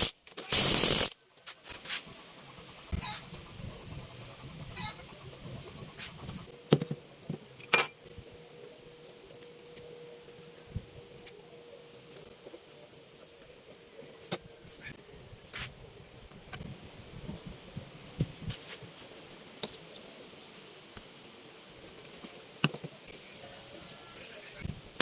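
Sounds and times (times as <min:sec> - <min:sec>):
metal parts clinking and knocking: 0:00.0 - 0:01.4, 0:07.6 - 0:08.0
faint steady ringing tone: 0:00.0 - 0:14.6.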